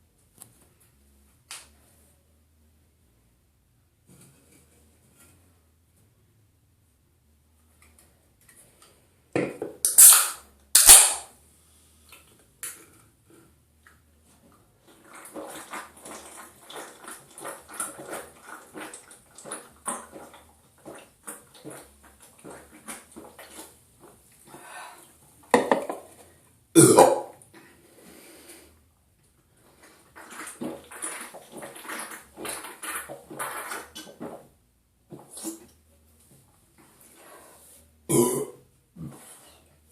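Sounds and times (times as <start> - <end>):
person burping loudly: 26.8 - 27.4, 38.1 - 39.1.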